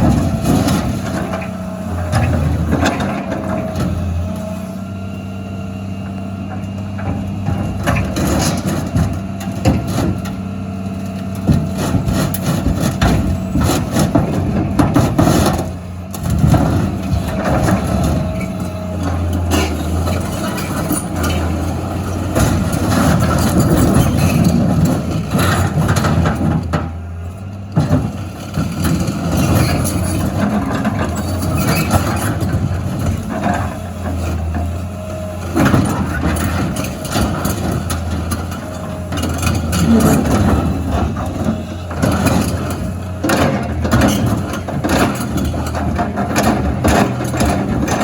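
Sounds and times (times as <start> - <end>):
heavy diesel engine running: 0.0 - 48.0
knocks and clatter: 11.4 - 18.4, 35.5 - 48.0.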